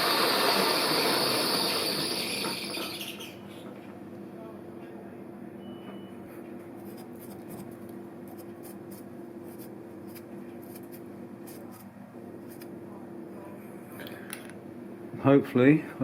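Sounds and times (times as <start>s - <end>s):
milling machine motor hum: 0.0s - 3.7s.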